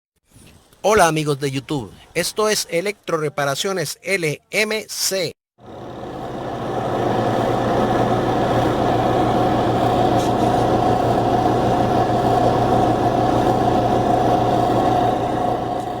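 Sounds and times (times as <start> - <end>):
machine humming with steady tone: 5.6 - 16.0.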